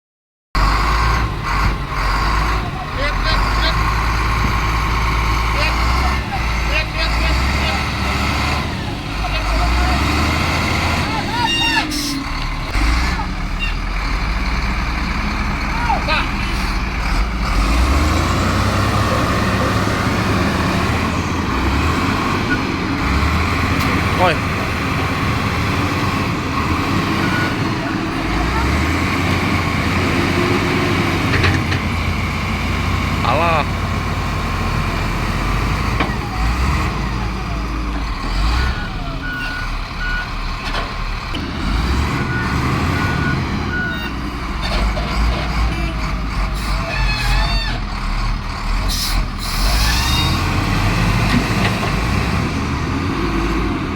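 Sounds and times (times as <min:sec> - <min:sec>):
diesel truck engine rumbling: 0:00.6 - 0:53.9.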